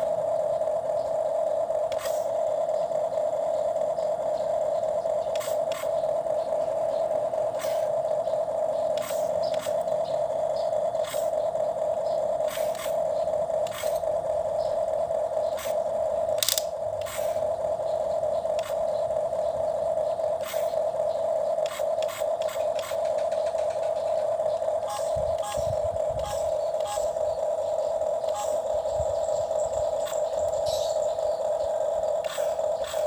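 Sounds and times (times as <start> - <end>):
small electric motor whirring: 0.0 - 33.0
plastic parts clicking and scraping: 15.6 - 17.4.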